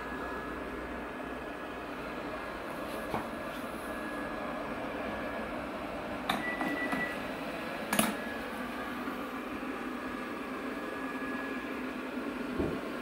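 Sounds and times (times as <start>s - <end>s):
mechanical hum: 0.0s - 13.0s
faint high whine: 2.9s - 7.4s.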